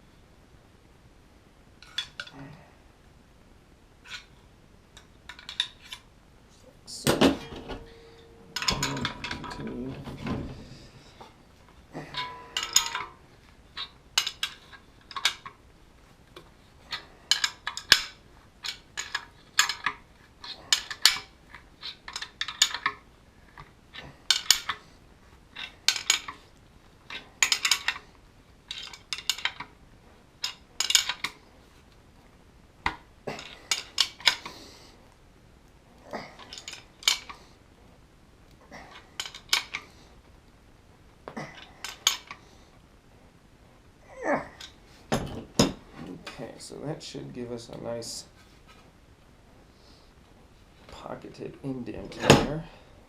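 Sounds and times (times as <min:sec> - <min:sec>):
metallic clicking and clinking: 0:07.2 - 0:10.4, 0:12.0 - 0:15.6, 0:16.4 - 0:24.9, 0:25.5 - 0:29.8, 0:30.4 - 0:31.4, 0:32.8 - 0:34.5, 0:36.4 - 0:37.4.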